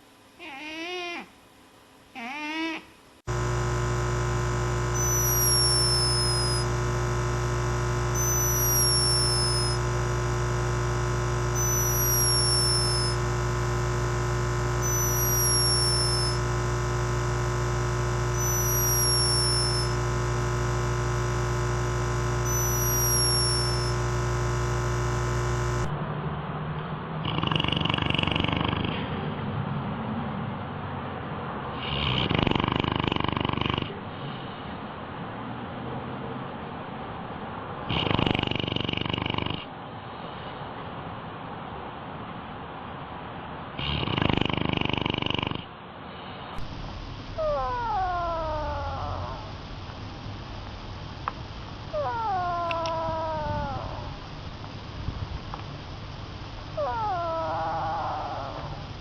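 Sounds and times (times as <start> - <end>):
noisy animal snoring: 3.3 - 25.9, 27.2 - 29.3, 31.7 - 34.4, 37.8 - 39.8, 43.7 - 45.8, 46.5 - 49.9, 51.9 - 54.5, 56.7 - 59.0
thin whistle on breath: 5.0 - 6.6, 8.2 - 9.8, 11.6 - 13.2, 14.8 - 16.4, 18.4 - 20.0, 22.5 - 24.0
cat purring and snoring: 27.2 - 29.2, 31.8 - 34.0, 37.9 - 39.7, 43.8 - 45.7.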